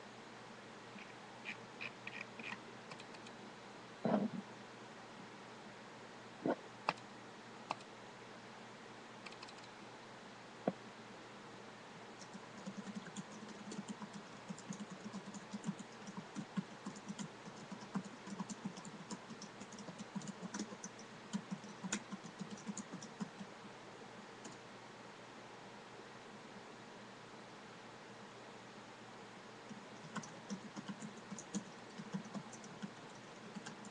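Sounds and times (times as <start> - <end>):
computer keyboard typing: 2.0 - 3.3, 9.3 - 9.7, 12.2 - 23.5, 29.7 - 33.9.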